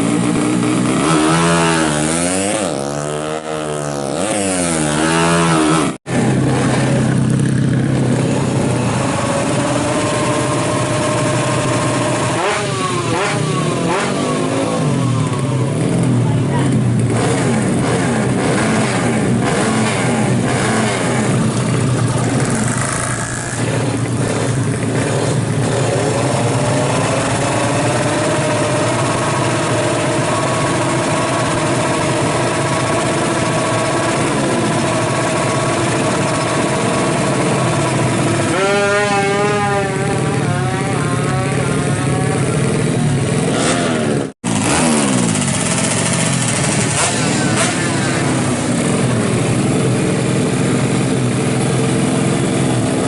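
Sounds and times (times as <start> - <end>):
motorcycle engine revving: 0.0 - 53.0.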